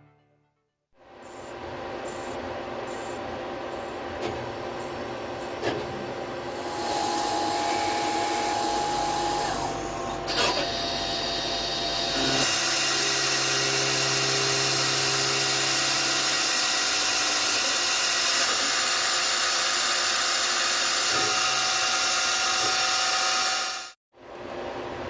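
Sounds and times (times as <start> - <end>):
lathe running with whining tones: 6.4 - 24.0.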